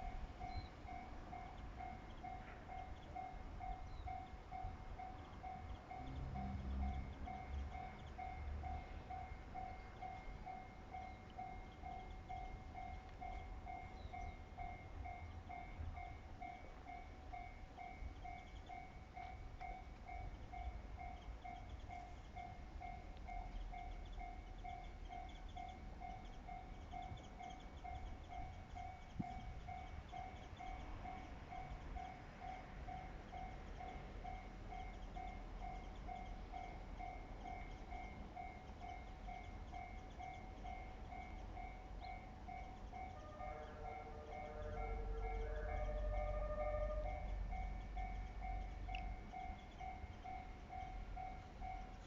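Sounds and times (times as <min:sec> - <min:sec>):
level crossing warning bell: 0:00.0 - 0:52.0
pitched tones: 0:42.6 - 0:49.0.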